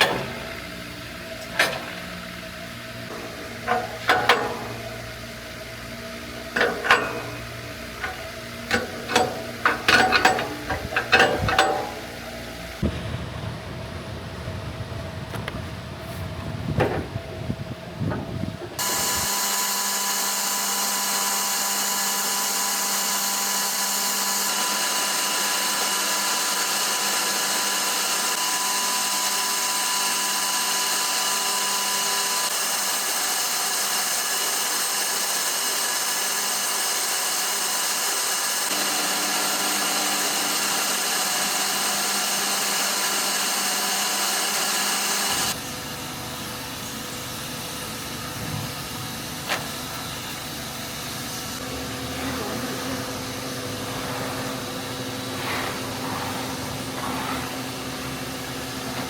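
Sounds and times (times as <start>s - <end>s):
power tool high-pitched whine: 18.8s - 59.0s.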